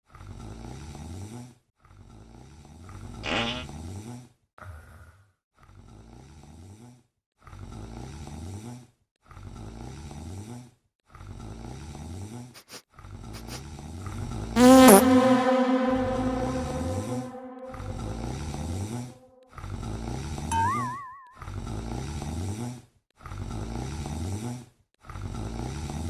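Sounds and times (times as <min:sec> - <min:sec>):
high-pitched whistle-like sound: 0:14.6 - 0:18.4.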